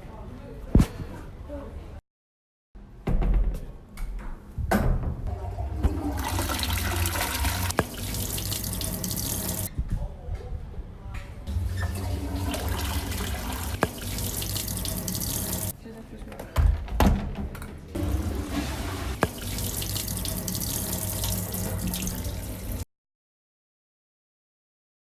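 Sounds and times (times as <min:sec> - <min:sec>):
running water rushing: 0:05.4 - 0:09.7, 0:11.5 - 0:15.7, 0:18.0 - 0:22.8.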